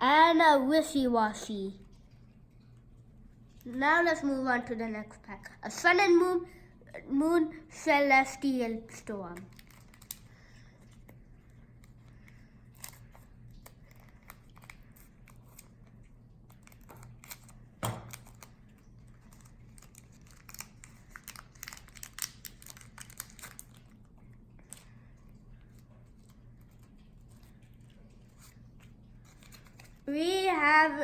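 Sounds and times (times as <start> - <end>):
foil wrapper tearing and crinkling: 9.4 - 10.3, 16.5 - 25.0, 28.3 - 30.1.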